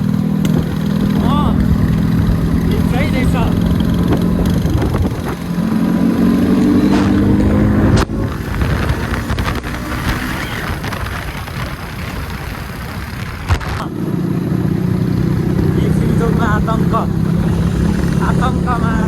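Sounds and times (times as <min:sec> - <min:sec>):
wind noise on microphone: 0:00.0 - 0:14.0
motorcycle engine running: 0:00.0 - 0:19.0
road noise: 0:00.0 - 0:19.0.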